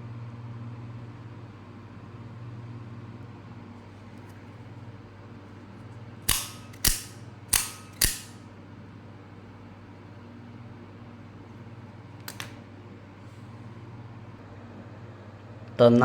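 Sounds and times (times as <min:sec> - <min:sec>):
knife blade mechanism snapping: 0:06.3 - 0:08.4
knife mechanism quiet clicks: 0:06.3 - 0:08.4.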